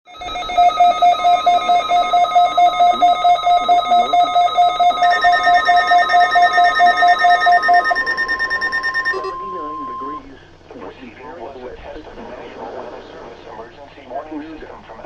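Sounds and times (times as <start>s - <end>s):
electronic alarm beeping rapidly: 0.1s - 10.2s
higher electronic alarm: 0.1s - 10.2s
steady warning alarm tone: 0.1s - 10.3s.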